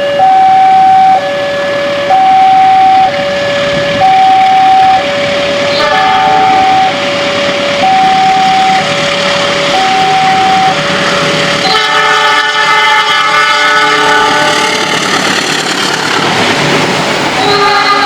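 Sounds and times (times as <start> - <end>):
level crossing two-tone alarm: 0.0 - 10.8
locomotive air horn: 0.0 - 15.1, 17.4 - 18.0
train rumbling: 0.0 - 18.0.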